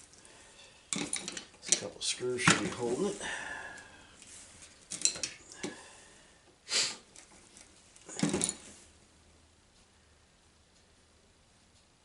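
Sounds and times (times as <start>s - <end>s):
metal tools clinking: 0.9s - 3.2s, 4.2s - 5.8s, 8.1s - 8.8s
short hiss: 6.6s - 7.1s.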